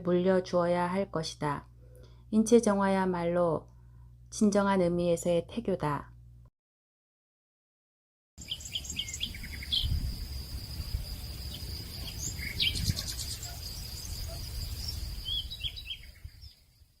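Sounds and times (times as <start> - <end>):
bird trill: 8.4 - 10.1, 11.5 - 16.7
birds chirping and calling: 8.4 - 10.1, 11.5 - 16.5
insect drone: 8.4 - 17.0.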